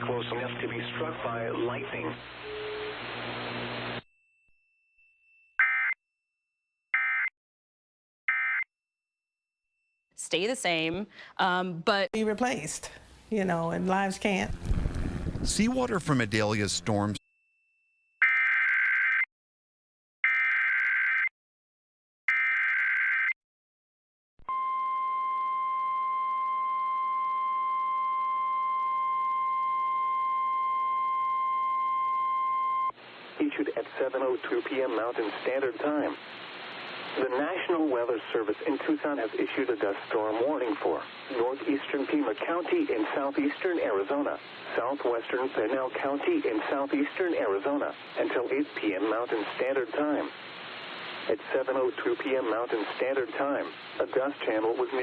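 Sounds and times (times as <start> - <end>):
broadcast hiss: 0.0 - 4.0, 12.2 - 17.2, 33.0 - 55.0.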